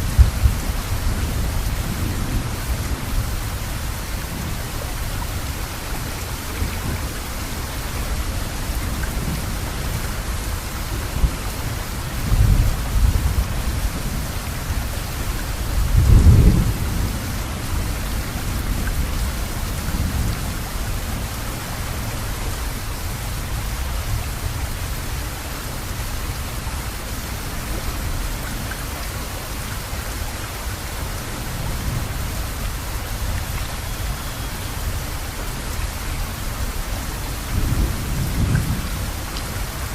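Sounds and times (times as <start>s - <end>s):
thunder rumbling: 0.0s - 3.6s, 15.6s - 21.2s
heavy rain: 0.0s - 39.9s.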